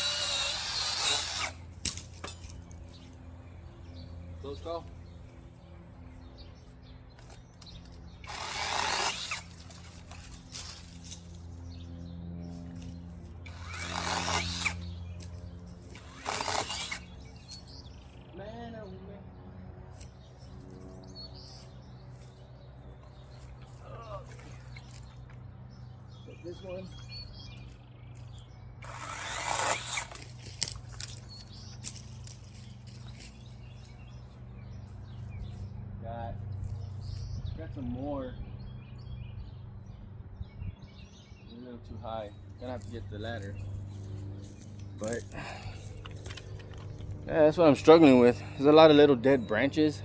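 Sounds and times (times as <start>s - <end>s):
power saw cutting branches: 0.0s - 3.2s, 7.1s - 11.8s, 12.5s - 18.3s, 27.0s - 34.4s, 42.3s - 50.0s
steady low hum: 0.0s - 40.9s, 41.8s - 50.0s
branch snapping: 1.4s - 2.6s, 8.8s - 11.4s, 29.8s - 33.4s
leaves and twigs rustling: 6.1s - 11.6s, 27.0s - 35.7s, 42.4s - 47.2s.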